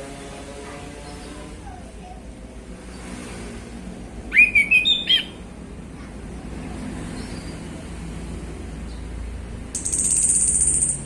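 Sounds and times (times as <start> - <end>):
road traffic rumble: 0.0 - 11.0
faint high chirp: 4.3 - 5.4.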